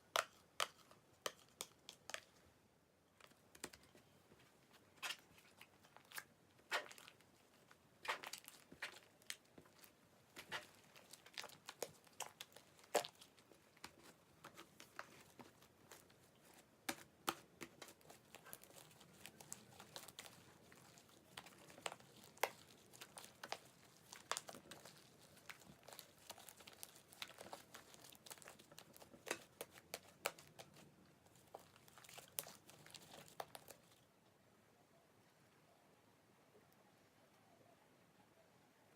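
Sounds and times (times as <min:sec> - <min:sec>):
slime and snacks crackling: 0:04.7 - 0:34.0.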